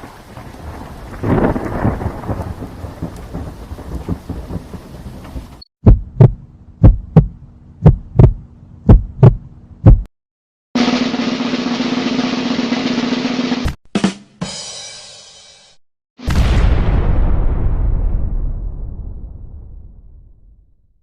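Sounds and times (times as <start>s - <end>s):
rain hiss: 0.0s - 5.6s
thunder rumble: 0.0s - 7.3s, 16.3s - 20.7s
heartbeat thumps: 5.8s - 10.1s.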